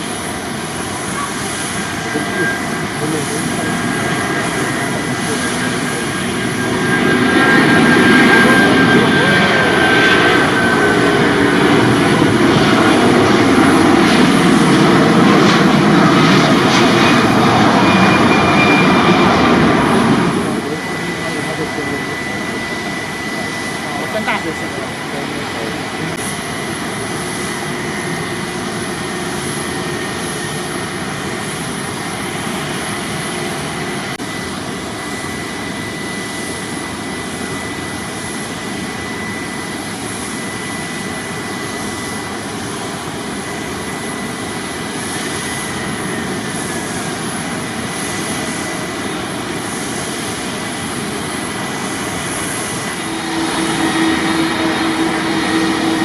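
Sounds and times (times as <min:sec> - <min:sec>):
jet engines rushing with whine: 0:00.0 - 0:56.0
low drone: 0:51.0 - 0:56.0.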